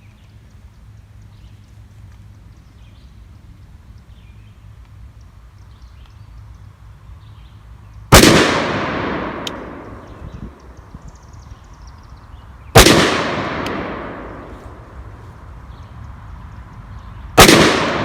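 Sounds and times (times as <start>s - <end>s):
gunshots with echo: 8.1s - 10.2s, 12.8s - 14.7s, 17.4s - 18.0s.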